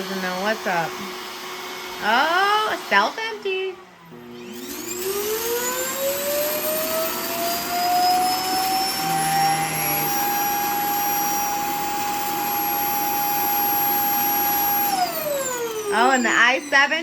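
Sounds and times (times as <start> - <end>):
vacuum dock fan whine: 0.0 - 17.0.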